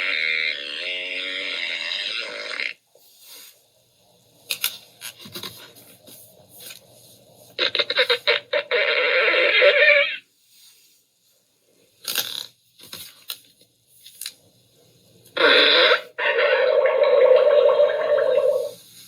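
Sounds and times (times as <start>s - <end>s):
fart sound effect: 0.0s - 2.8s, 7.6s - 10.2s, 15.4s - 18.8s.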